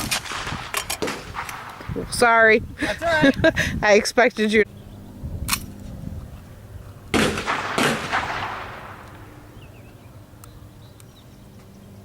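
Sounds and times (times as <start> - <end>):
shotgun shots echoing: 0.0 - 2.3, 7.1 - 9.8.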